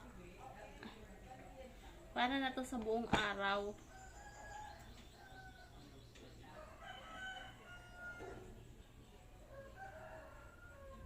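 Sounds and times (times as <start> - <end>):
faint rooster crowing: 3.8 - 8.7, 9.4 - 11.0.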